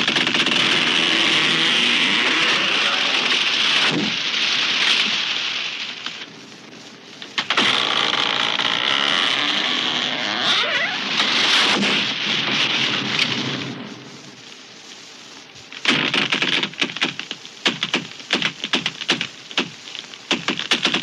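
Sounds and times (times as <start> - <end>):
sharp wood cracks: 0.0 - 13.8, 14.4 - 21.0
branches and leaves breaking: 7.4 - 13.7.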